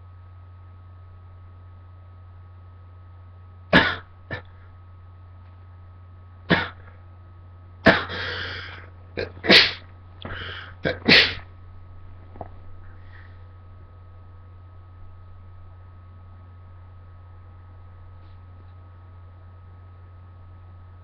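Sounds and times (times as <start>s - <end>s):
person sneezing: 3.8s - 4.6s, 6.5s - 6.9s, 7.8s - 11.5s.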